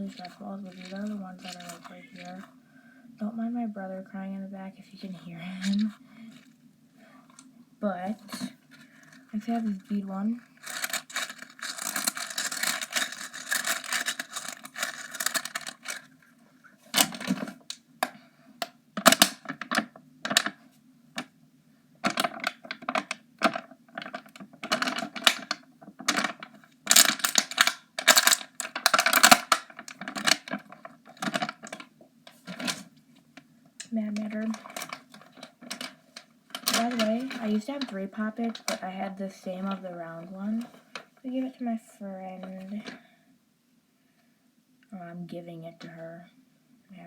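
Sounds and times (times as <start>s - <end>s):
beads clicking and rattling: 0.1s - 2.5s, 10.6s - 16.1s, 22.3s - 31.9s.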